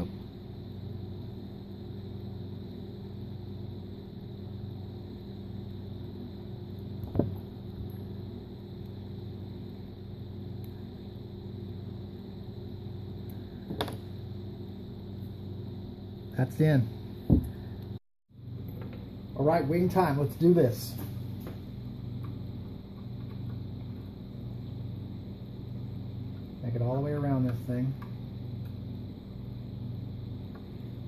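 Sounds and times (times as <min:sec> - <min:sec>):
low electrical hum: 0:00.0 - 0:31.0.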